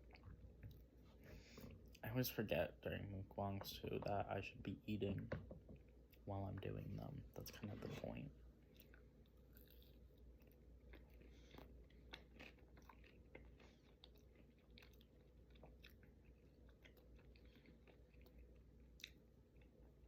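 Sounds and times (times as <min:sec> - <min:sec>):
chewing and crunching: 0:00.0 - 0:02.0, 0:08.6 - 0:20.0.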